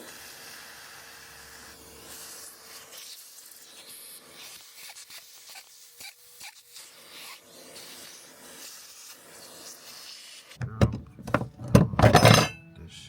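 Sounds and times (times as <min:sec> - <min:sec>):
loud metal knocks and clanks: 0:10.6 - 0:12.6
faint metal scraping: 0:10.7 - 0:12.6.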